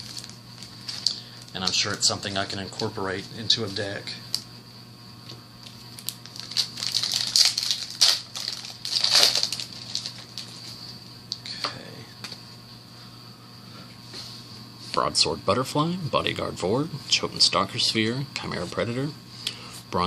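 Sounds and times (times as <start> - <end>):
foil wrapper tearing and crinkling: 0.0 - 2.1, 6.0 - 10.7
faint steady hum: 0.0 - 20.0.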